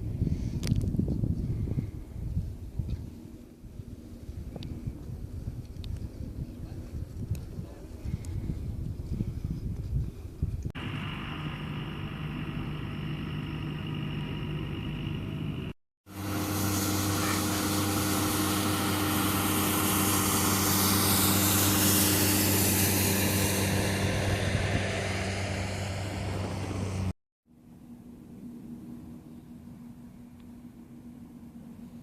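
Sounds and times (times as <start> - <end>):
engine running with low hum: 10.3 - 32.0
loud rushing noise: 16.1 - 27.1.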